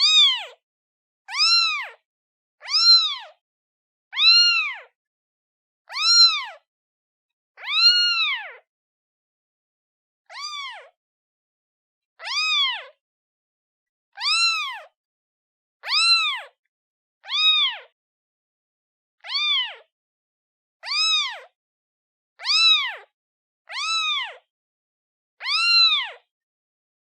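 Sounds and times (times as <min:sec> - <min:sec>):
kitten meowing: 0:00.0 - 0:00.6, 0:01.3 - 0:02.0, 0:02.6 - 0:03.4, 0:04.1 - 0:05.0, 0:05.9 - 0:06.7, 0:07.6 - 0:08.6, 0:10.3 - 0:11.0, 0:12.2 - 0:13.0, 0:14.2 - 0:14.9, 0:15.8 - 0:16.6, 0:17.2 - 0:17.9, 0:19.2 - 0:19.9, 0:20.8 - 0:21.6, 0:22.4 - 0:23.1, 0:23.7 - 0:24.5, 0:25.4 - 0:26.3.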